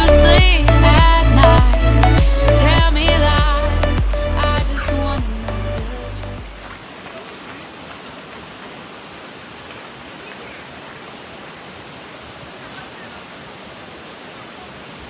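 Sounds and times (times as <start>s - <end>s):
mountain stream rushing: 4.5s - 15.0s.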